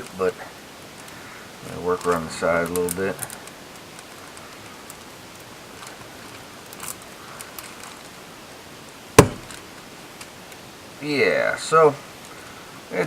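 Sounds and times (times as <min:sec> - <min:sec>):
sharp knock: 0:09.2 - 0:09.6.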